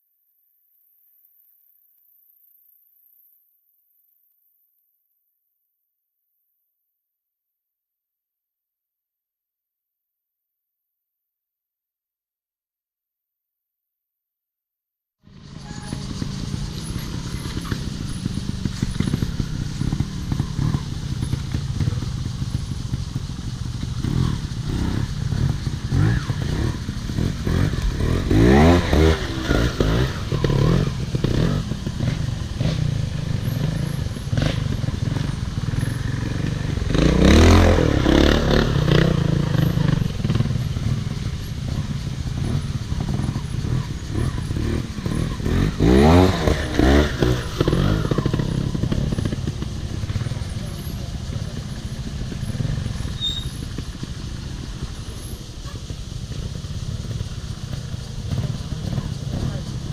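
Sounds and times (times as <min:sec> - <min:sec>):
motorcycle engine revving: 0:15.3 - 0:59.9.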